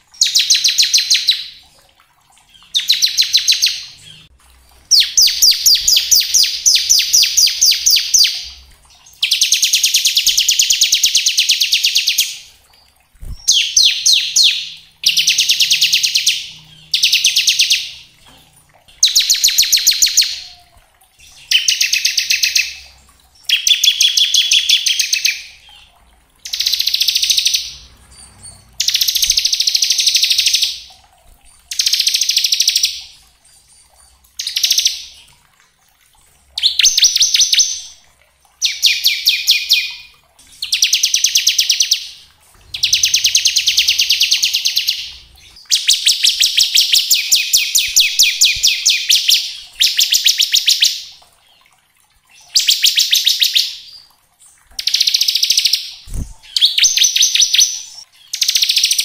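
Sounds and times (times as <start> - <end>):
bird singing rattling trills: 4.9 - 18.0, 19.0 - 30.9, 38.6 - 51.6, 54.8 - 59.0.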